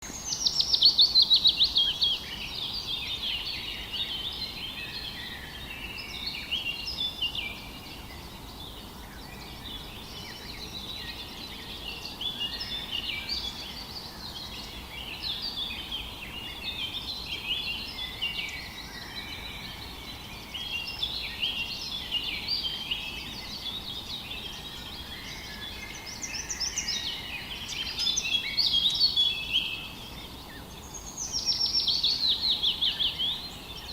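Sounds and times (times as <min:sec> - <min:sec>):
birds chirping and trilling: 0:00.0 - 0:33.9.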